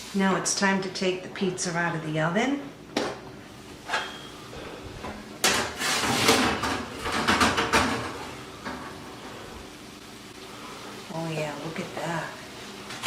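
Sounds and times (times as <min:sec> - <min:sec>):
metal pan scraping on oven rack: 0:05.5 - 0:08.2.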